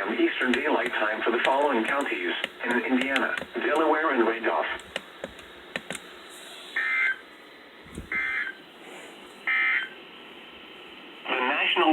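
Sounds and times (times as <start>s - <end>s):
electronic buzzer beeps: 6.8s - 7.2s, 8.1s - 8.6s.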